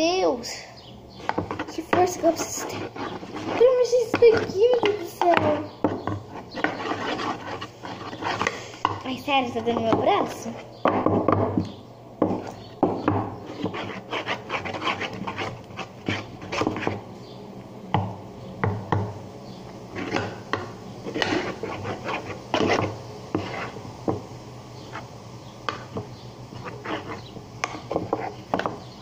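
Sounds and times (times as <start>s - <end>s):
utensil stirring thick slime: 1.2s - 17.1s, 19.9s - 23.9s, 25.7s - 29.0s.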